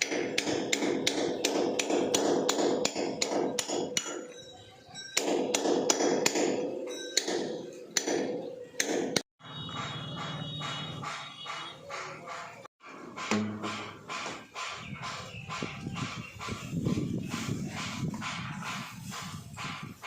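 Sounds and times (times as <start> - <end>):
hammer blows: 5.2 - 20.0.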